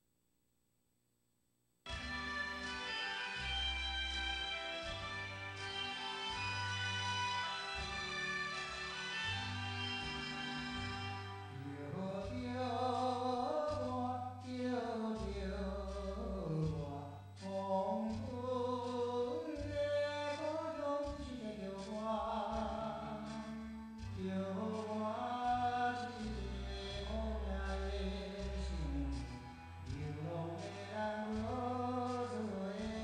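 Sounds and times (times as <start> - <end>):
low bass notes: 3.4 - 33.0
person singing: 11.5 - 33.0.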